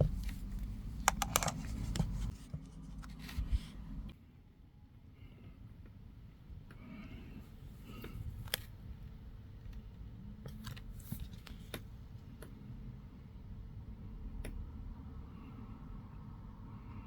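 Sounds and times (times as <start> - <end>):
small clicks and taps: 1.1 - 2.3.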